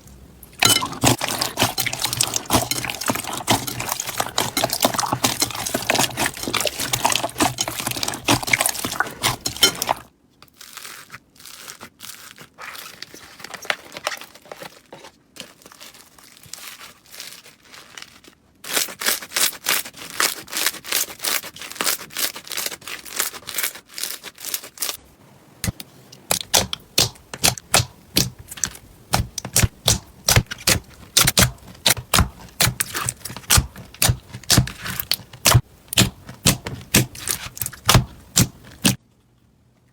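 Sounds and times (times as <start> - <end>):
slime crackling and popping: 0.6 - 12.5, 26.3 - 39.0.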